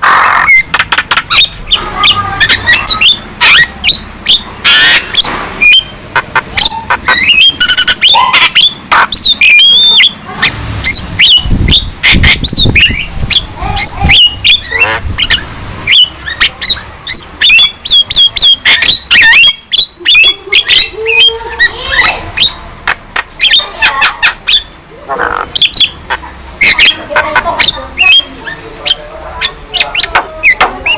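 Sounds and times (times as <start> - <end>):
bird chattering squawks and whistles: 0.0 - 30.9.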